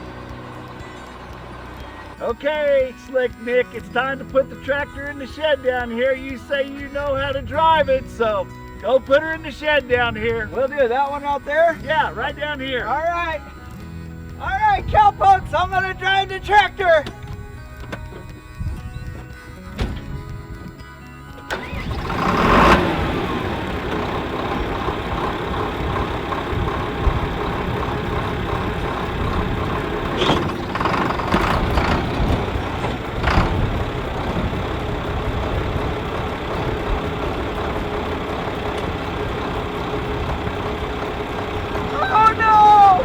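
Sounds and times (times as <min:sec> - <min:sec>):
tractor engine running: 0:00.0 - 0:20.8, 0:21.4 - 0:43.0
brief clanks: 0:29.3 - 0:33.8.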